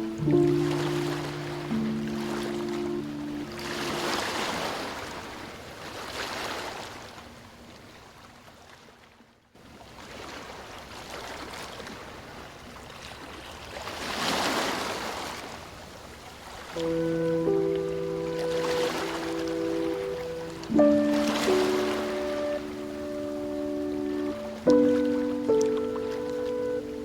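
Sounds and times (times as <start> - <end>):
soft music with held notes: 0.0 - 4.9, 16.8 - 27.0
ocean waves on a beach: 0.0 - 27.0.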